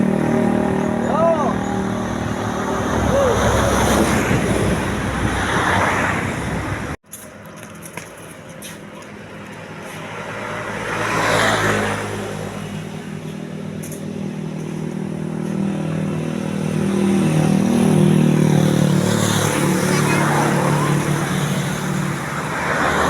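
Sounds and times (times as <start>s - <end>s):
vehicle passing: 0.0s - 7.0s, 8.8s - 13.7s, 14.4s - 23.0s.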